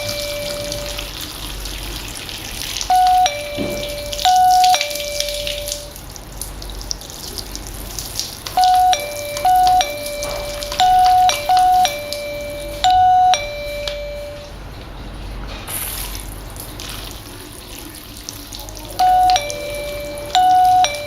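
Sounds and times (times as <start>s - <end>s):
doorbell ding-dong chime: 0.0s - 1.2s, 2.9s - 6.0s, 8.6s - 14.6s, 19.0s - 21.0s.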